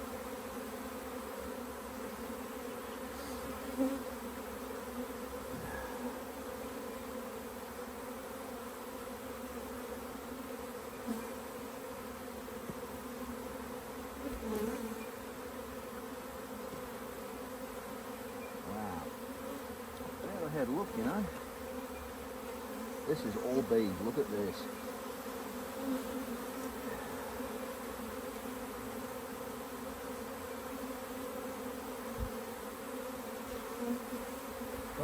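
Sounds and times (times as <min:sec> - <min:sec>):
bees buzzing: 0:00.0 - 0:35.0
light knocks on hive: 0:32.1 - 0:32.4.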